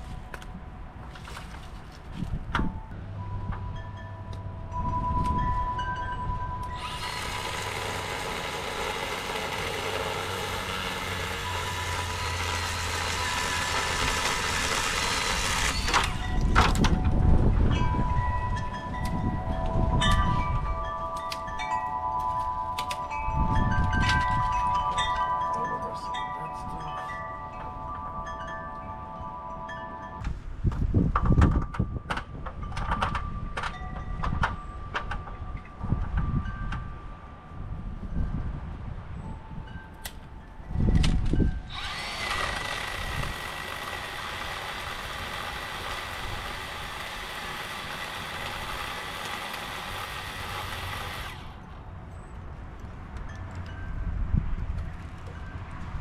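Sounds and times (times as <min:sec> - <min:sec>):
chimes ringing: 0:02.8 - 0:07.0, 0:11.3 - 0:13.9, 0:15.6 - 0:30.3
power saw cutting branches: 0:06.6 - 0:22.2, 0:41.0 - 0:51.8.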